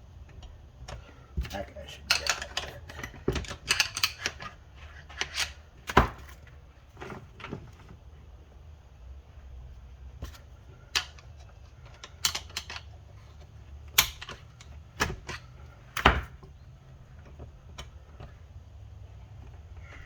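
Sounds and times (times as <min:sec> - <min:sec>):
metal parts knocking and clicking: 0:01.9 - 0:06.3, 0:10.9 - 0:13.0, 0:13.9 - 0:16.4.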